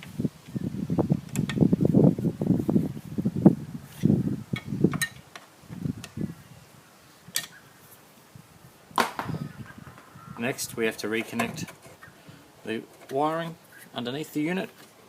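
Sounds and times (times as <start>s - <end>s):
tools scraping and rattling: 10.9s - 12.1s, 12.7s - 13.6s.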